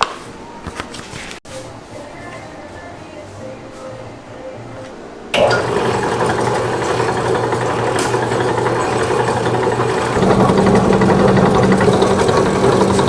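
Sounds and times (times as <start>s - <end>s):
machine motor humming: 5.4s - 13.0s.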